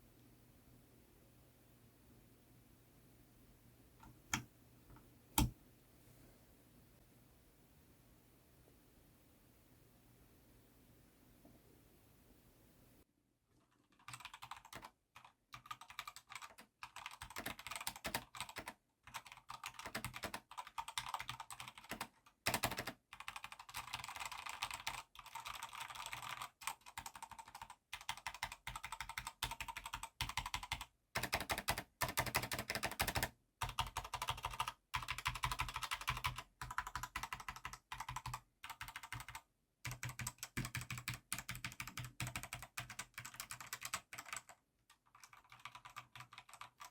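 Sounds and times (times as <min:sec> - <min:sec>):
fast typing on mechanical keyboard: 0:13.8 - 0:46.9.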